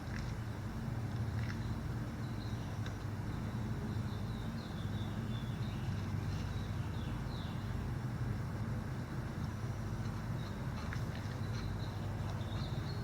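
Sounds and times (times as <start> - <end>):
small bird chirping: 1.5 - 7.8, 10.3 - 13.0.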